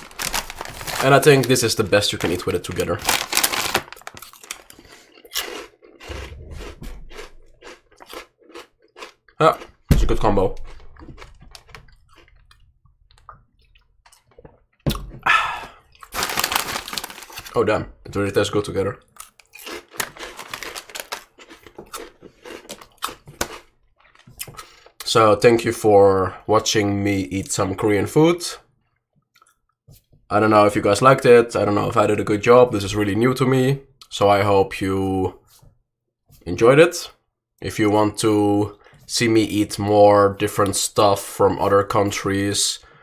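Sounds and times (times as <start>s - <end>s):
person chewing crunchy chips: 0.0s - 9.9s, 10.6s - 17.7s, 19.0s - 25.0s.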